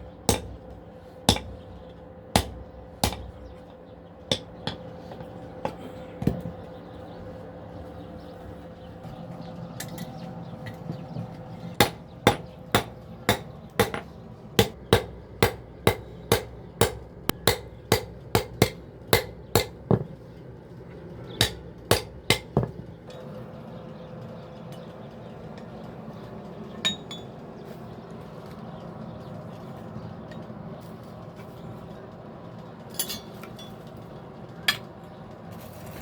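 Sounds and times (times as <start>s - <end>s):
steady low hum: 0.0s - 36.0s
hammer striking metal on anvil: 0.3s - 1.7s, 2.3s - 3.5s, 4.3s - 6.4s, 11.8s - 20.1s, 21.4s - 22.8s.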